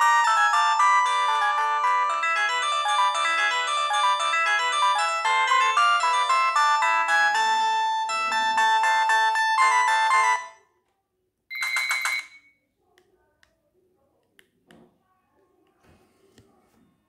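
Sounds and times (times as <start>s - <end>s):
polyphonic phone ringtone: 0.0s - 10.6s, 11.5s - 12.6s.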